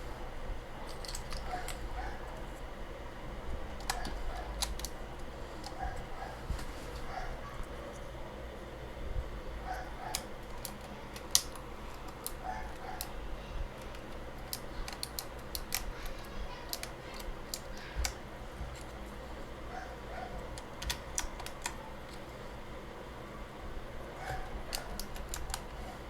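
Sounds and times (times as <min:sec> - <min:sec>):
keycaps snapping onto keyboard: 0:00.8 - 0:01.8, 0:03.8 - 0:06.1, 0:10.1 - 0:13.1, 0:13.8 - 0:19.0, 0:20.4 - 0:22.3, 0:24.2 - 0:25.8.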